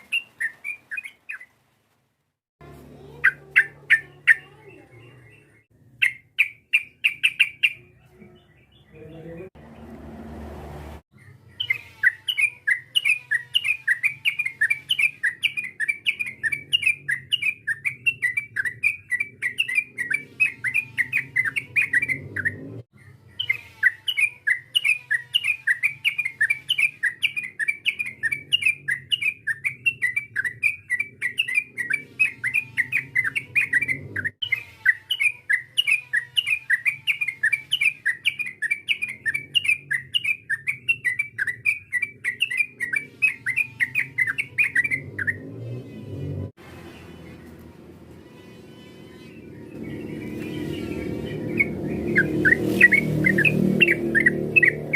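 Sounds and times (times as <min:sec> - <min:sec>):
bird chattering call: 0:49.1 - 0:54.9.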